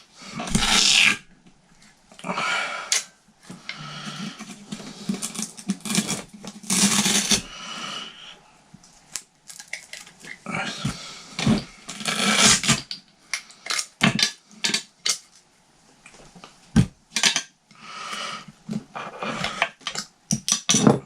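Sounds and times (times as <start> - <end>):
cable handling scraping and rustling: 2.9 - 7.5.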